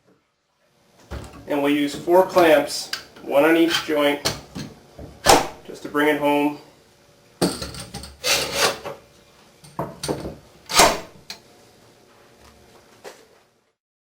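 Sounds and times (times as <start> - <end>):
clamps scraping and knocking on wood: 7.8 - 9.0.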